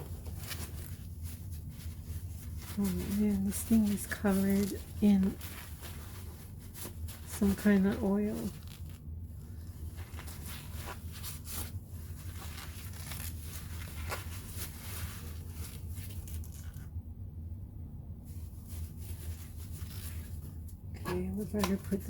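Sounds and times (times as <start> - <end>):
paper towel rustling and rubbing: 0.0 - 17.0, 18.2 - 22.0
steady low hum: 0.0 - 22.0.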